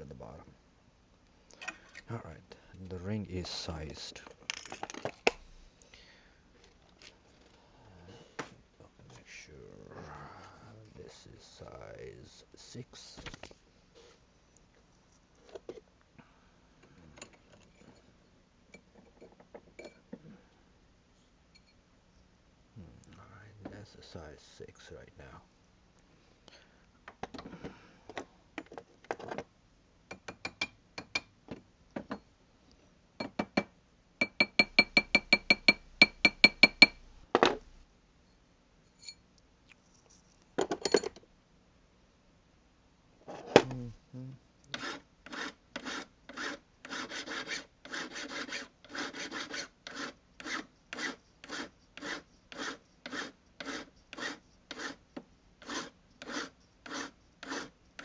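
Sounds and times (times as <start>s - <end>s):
hand file stroking metal ring: 34.2s - 37.8s, 44.7s - 58.0s.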